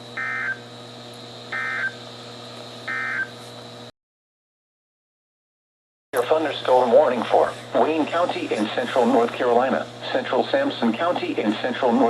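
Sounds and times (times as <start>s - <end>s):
steady hum: 0.0s - 3.9s, 6.2s - 12.0s
warbling data bursts: 1.5s - 2.0s.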